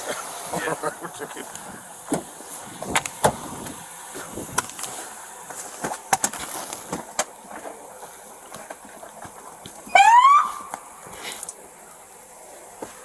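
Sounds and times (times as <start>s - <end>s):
light rustling: 0.0s - 9.9s
steady hiss: 0.0s - 9.9s, 10.6s - 13.0s.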